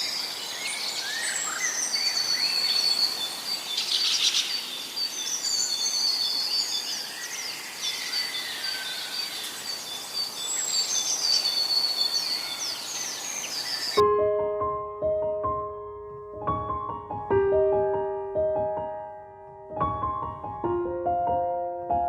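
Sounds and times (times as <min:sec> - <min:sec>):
birds chirping: 0:00.0 - 0:14.0
piano music: 0:14.0 - 0:22.0.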